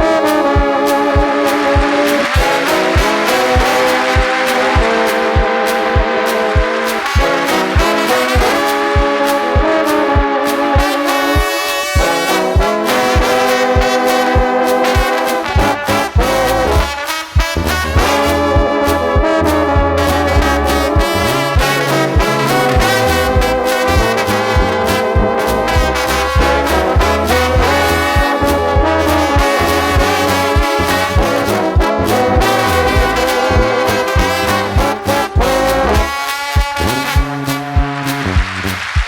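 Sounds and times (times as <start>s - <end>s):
brass music with trombones and trumpets: 0.0s - 39.0s
steady drum beat: 0.0s - 39.0s
bass: 15.5s - 39.0s.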